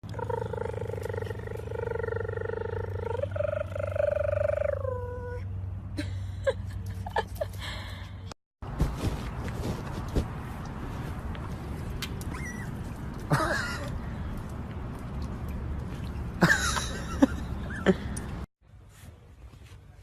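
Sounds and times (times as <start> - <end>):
young animal squeaking: 12.2 - 12.8.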